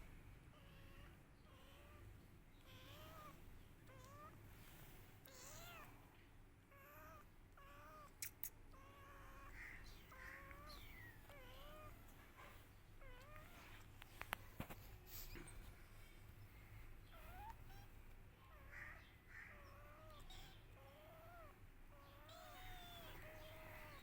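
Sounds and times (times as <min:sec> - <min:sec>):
kittens mewing: 0:00.5 - 0:04.4, 0:05.2 - 0:06.0, 0:06.6 - 0:13.9, 0:17.0 - 0:24.0.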